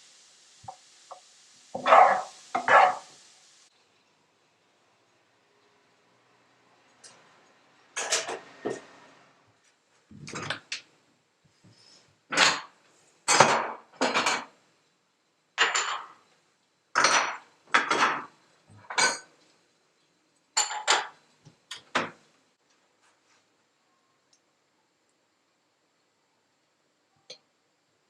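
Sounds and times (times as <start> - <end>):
dishes and cutlery clinking: 8.0 - 8.8, 15.6 - 16.2, 17.0 - 19.4, 20.6 - 22.2.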